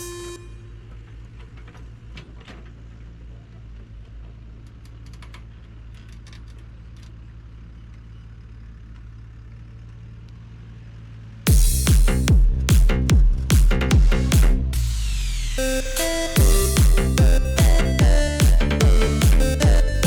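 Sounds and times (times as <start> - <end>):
light clicks and clatter: 4.0 - 8.1
construction machine engine idling: 16.1 - 20.0.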